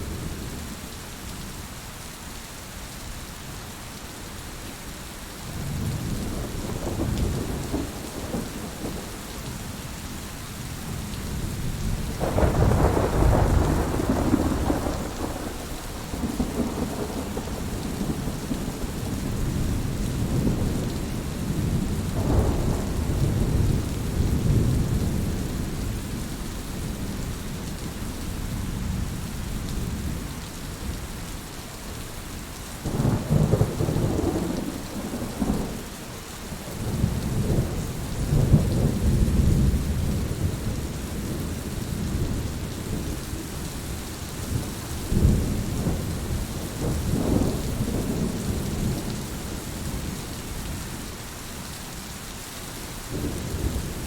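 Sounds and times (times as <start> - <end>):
heavy rain: 0.0 - 54.0
rolling thunder: 5.6 - 9.8, 10.9 - 26.0, 32.9 - 36.0, 36.6 - 50.2.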